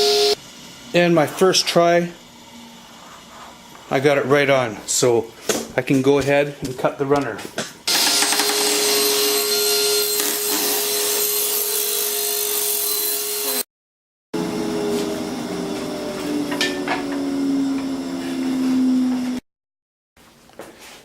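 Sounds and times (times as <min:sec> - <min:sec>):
table saw cutting wood: 0:00.0 - 0:00.4, 0:07.9 - 0:13.7, 0:14.4 - 0:19.4.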